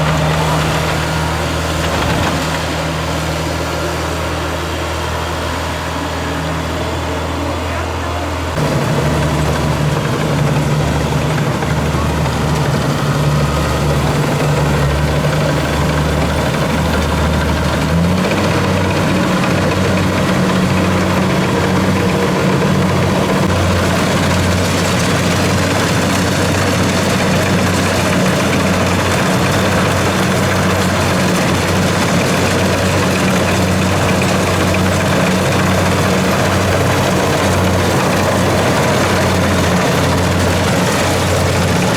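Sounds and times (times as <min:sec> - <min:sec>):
diesel engine revving: 0:00.0 - 0:41.9.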